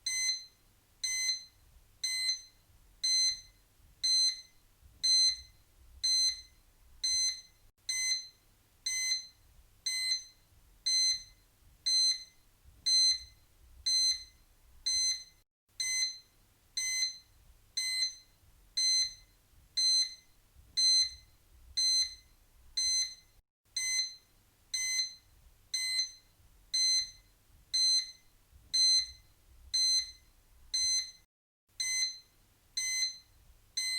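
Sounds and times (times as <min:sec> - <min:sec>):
timer beeping: 0:00.1 - 0:08.3, 0:08.9 - 0:20.2, 0:22.8 - 0:28.2, 0:30.8 - 0:31.2.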